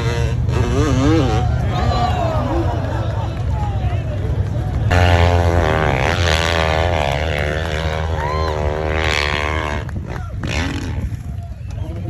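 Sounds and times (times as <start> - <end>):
motorcycle engine revving hard: 0.0 - 1.6, 4.9 - 11.3.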